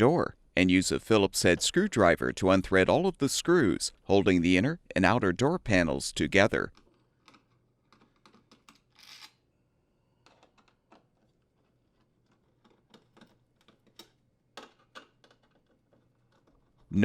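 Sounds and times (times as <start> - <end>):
screwdriver clicks and scrapes: 6.8 - 9.4.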